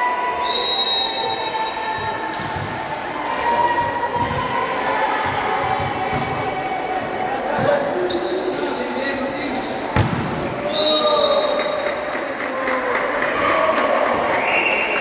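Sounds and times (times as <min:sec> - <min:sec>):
gym background noise: 0:00.0 - 0:15.0
basketball bouncing on court: 0:03.6 - 0:07.8, 0:09.9 - 0:10.7.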